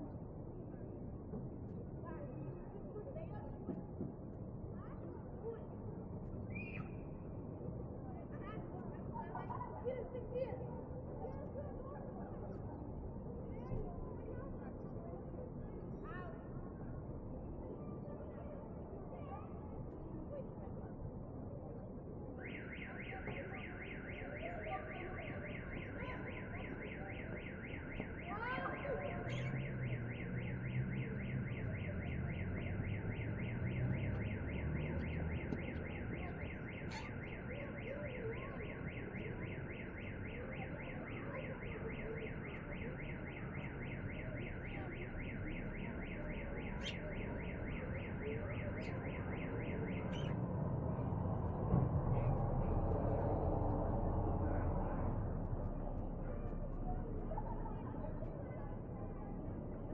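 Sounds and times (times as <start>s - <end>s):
passing traffic rumble: 19.6s - 59.9s
car alarm beeping: 22.4s - 50.4s
bird chirp: 29.2s - 29.6s, 46.8s - 47.2s.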